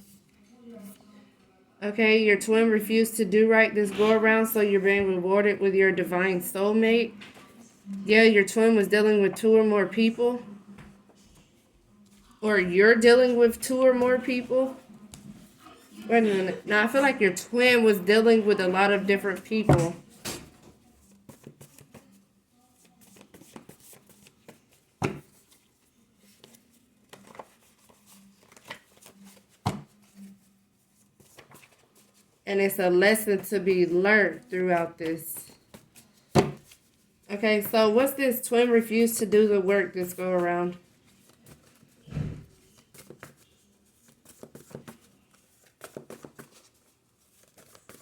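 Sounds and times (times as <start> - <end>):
cards rustling and clicking: 22.8 - 30.3, 31.0 - 32.3, 40.1 - 48.0.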